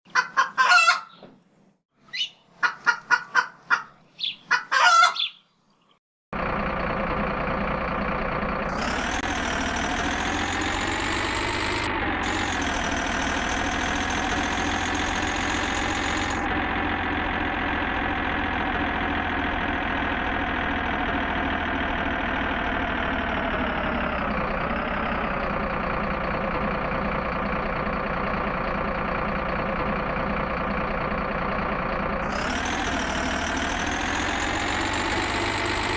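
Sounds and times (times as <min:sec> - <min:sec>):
chicken clucking: 0:00.1 - 0:01.3, 0:02.1 - 0:05.4
rooster crowing: 0:04.7 - 0:05.3
engine idling: 0:06.4 - 0:35.9.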